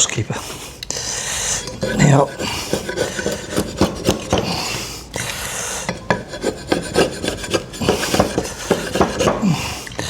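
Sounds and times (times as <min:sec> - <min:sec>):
scraping strokes on wood: 0:01.4 - 0:09.9.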